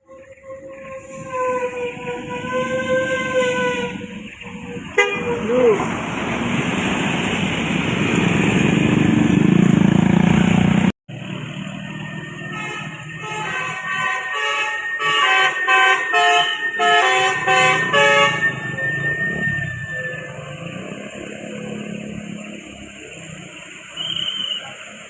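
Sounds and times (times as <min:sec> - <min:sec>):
bus musical multi-tone horn: 0:00.0 - 0:05.9, 0:12.0 - 0:22.4, 0:23.8 - 0:24.9
loud vehicle noise: 0:00.0 - 0:25.0.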